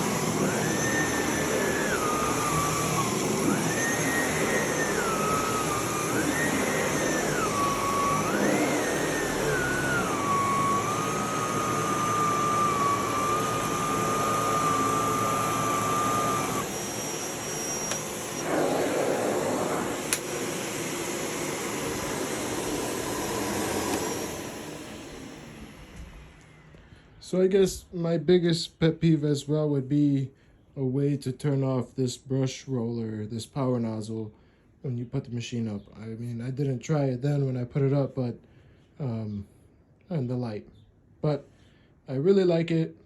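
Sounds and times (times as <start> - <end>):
vacuum cleaner running: 0.0 - 26.9.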